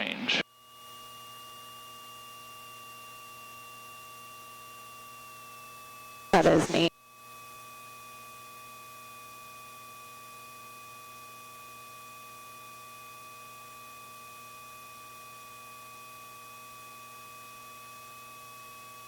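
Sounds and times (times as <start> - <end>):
electrical hum: 6.4 - 6.9.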